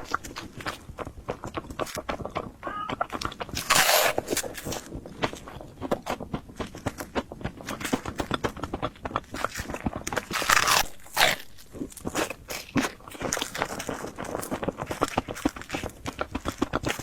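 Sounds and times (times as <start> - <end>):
chewing and crunching fried bread: 0.0 - 17.0
mouth clicks: 0.0 - 17.0.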